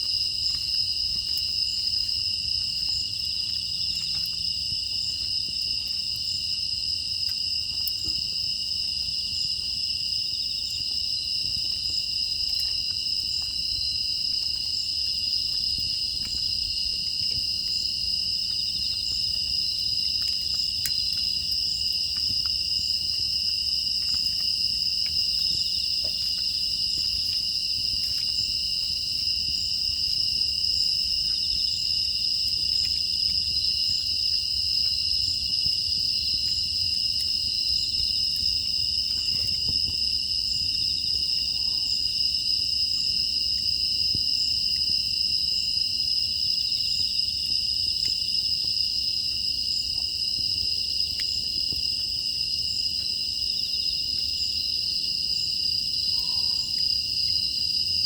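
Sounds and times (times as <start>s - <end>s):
insects trilling: 0.0s - 58.0s
faint crackling clicks: 15.5s - 17.5s.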